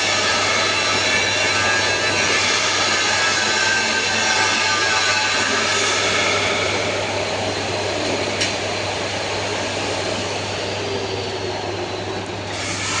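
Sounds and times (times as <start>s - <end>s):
angle grinder running: 12.5s - 13.0s.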